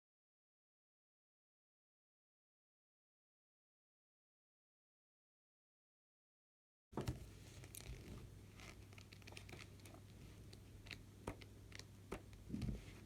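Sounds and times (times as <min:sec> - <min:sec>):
rustling and crinkling: 0:07.0 - 0:13.0.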